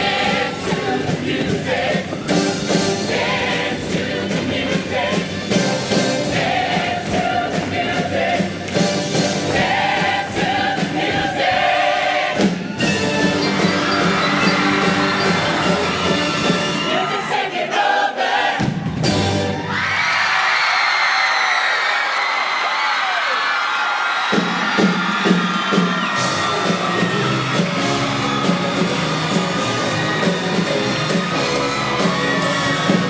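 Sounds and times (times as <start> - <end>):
choir singing with instrumental backing: 0.0 - 19.7, 25.4 - 33.0
audience cheering: 12.8 - 17.5, 19.4 - 33.0.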